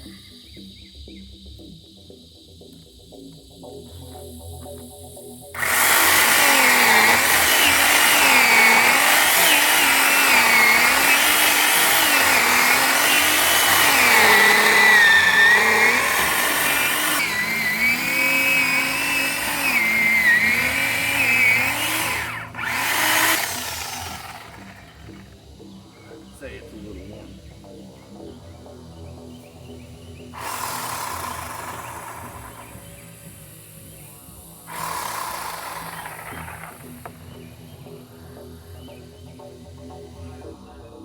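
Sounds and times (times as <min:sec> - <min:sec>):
chainsaw cutting wood: 0:05.6 - 0:25.4, 0:30.4 - 0:37.5.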